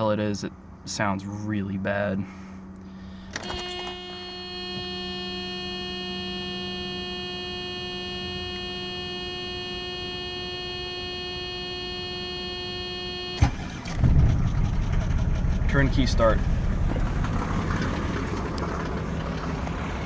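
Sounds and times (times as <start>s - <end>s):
steady warning buzzer tone: 3.4s - 13.8s.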